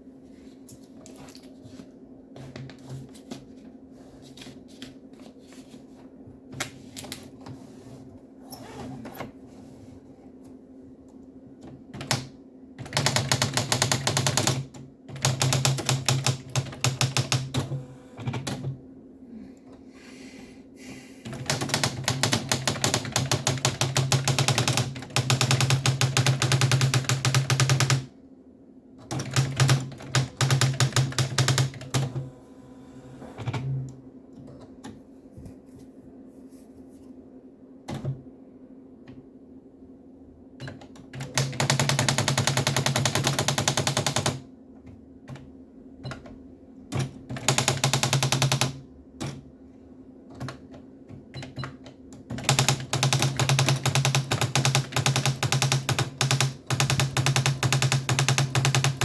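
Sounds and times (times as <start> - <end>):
electronic typewriter strikes: 12.0 - 18.7, 21.3 - 28.1, 29.0 - 32.3, 40.6 - 44.4, 47.0 - 49.4, 52.3 - 59.0.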